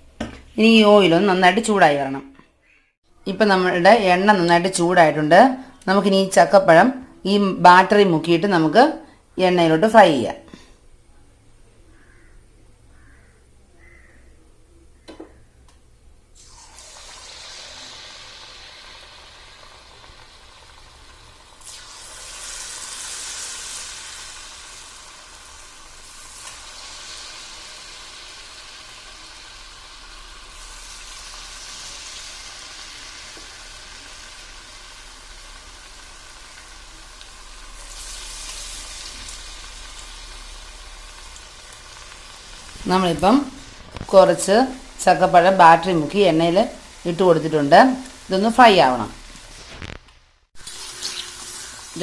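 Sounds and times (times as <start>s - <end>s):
batter-coated fruit deep-frying in oil: 16.3s - 52.0s.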